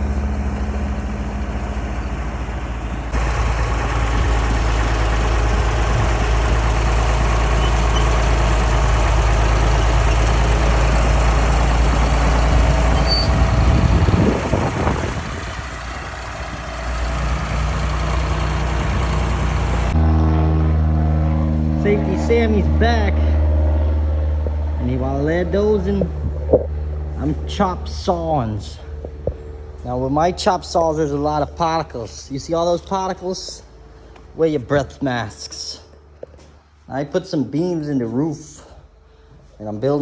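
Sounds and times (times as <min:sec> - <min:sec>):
bulldozer engine running: 0:00.0 - 0:40.0.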